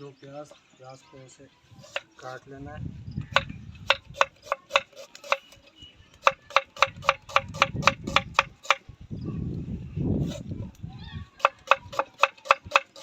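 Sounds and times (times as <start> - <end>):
knife chopping onions on board: 3.3 - 5.6, 6.2 - 8.8, 11.4 - 13.0.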